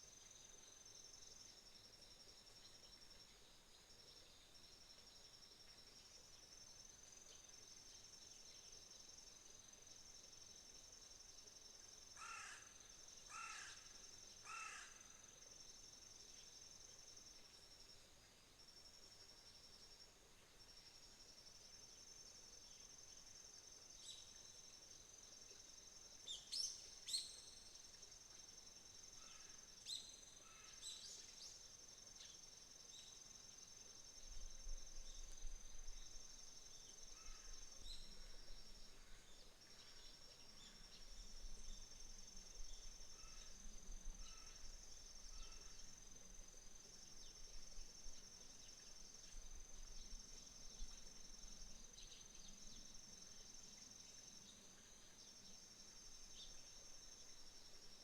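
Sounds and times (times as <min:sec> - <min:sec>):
insects trilling chorus: 0:11.9 - 0:17.5, 0:23.9 - 0:58.0.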